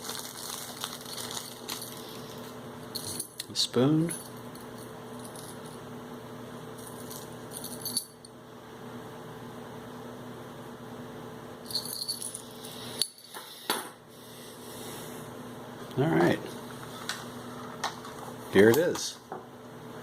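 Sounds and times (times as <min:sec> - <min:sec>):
small objects clicking and rattling: 0:00.0 - 0:02.0
steady low hum: 0:00.0 - 0:20.0.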